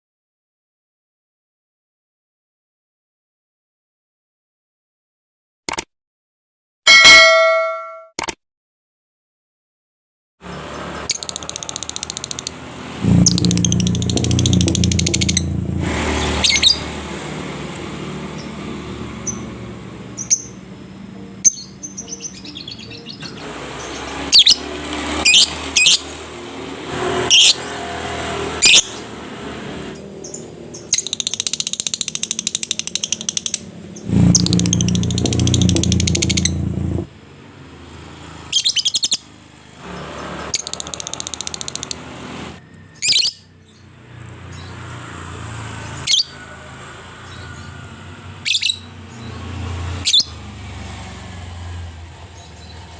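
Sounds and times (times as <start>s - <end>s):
lovebird chirps and trills: 11.0s - 15.6s, 16.2s - 16.9s, 20.2s - 20.6s, 21.4s - 24.6s, 30.2s - 36.7s, 42.8s - 43.9s, 48.4s - 49.4s
low rumble: 13.0s - 16.0s, 34.1s - 37.1s.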